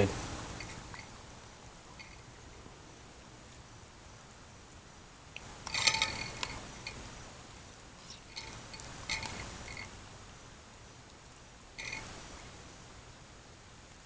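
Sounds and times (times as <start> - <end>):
utensil scraping metal pot: 5.5 - 7.0, 8.0 - 9.9, 11.8 - 12.2.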